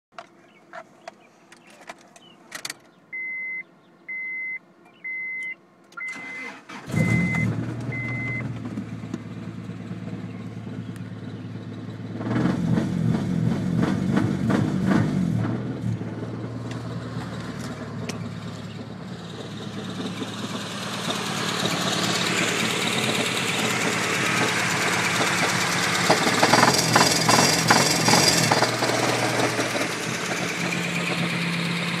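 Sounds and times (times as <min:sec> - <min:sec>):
car engine idling roughly: 0:18.9 - 0:32.0.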